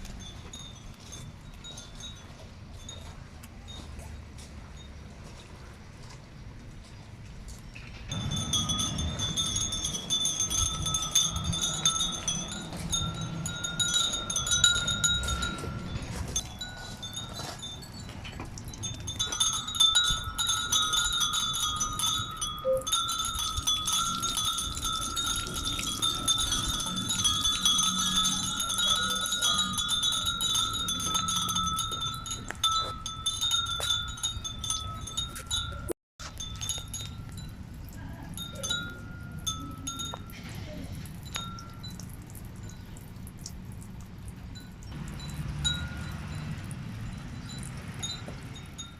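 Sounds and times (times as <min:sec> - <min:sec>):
wind bells tinkling: 0:00.0 - 0:05.6, 0:08.1 - 0:48.9.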